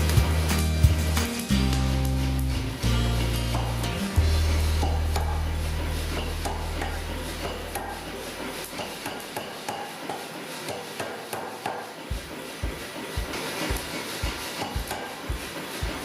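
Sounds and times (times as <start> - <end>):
hammer striking steel on anvil: 1.2 - 16.0
low steady hum: 2.6 - 9.3.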